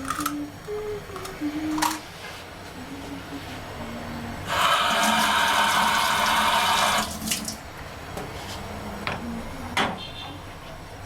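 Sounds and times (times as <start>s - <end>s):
water running from a tap: 4.5s - 7.6s.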